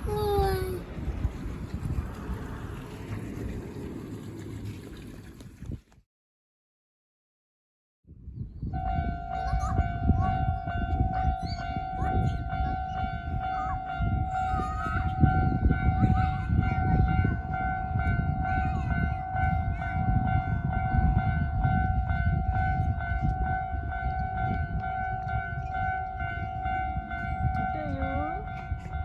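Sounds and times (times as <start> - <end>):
train rumbling past: 0.0 - 5.6, 8.9 - 29.0
level crossing warning bell: 8.9 - 29.0.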